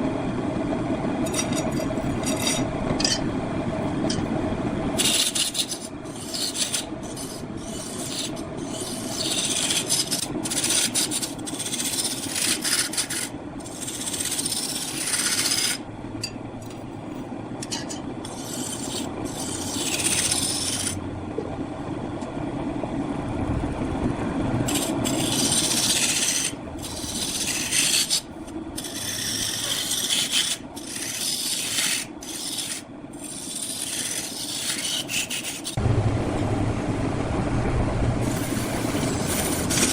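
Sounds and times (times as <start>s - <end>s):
lathe running: 0.0s - 39.9s
lathe tool scraping wood: 1.3s - 2.8s, 4.9s - 15.8s, 18.2s - 21.0s, 24.6s - 35.8s, 38.2s - 39.9s.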